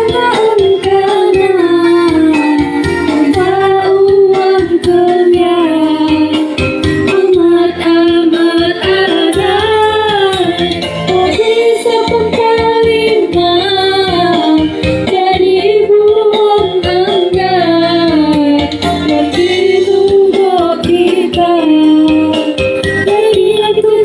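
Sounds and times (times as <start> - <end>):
instrumental backing: 0.0 - 24.0
woman singing slow melody: 0.0 - 24.0.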